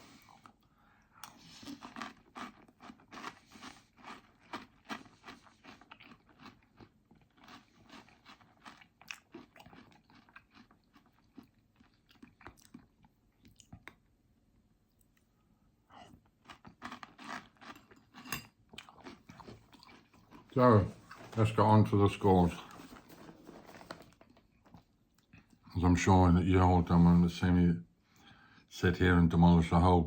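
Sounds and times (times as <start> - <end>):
chewing crunchy cereal: 0.0 - 14.2, 15.9 - 25.7.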